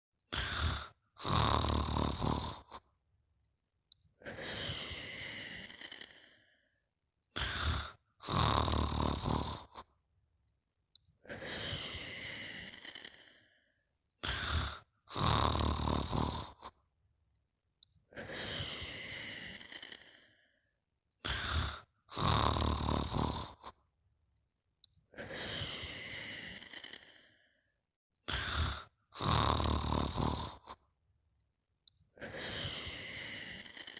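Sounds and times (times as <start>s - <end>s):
person snoring: 0.3s - 2.9s, 4.2s - 6.7s, 7.3s - 10.0s, 11.2s - 16.8s, 18.1s - 20.6s, 21.2s - 23.9s, 25.1s - 27.6s, 28.3s - 31.0s, 32.2s - 33.9s.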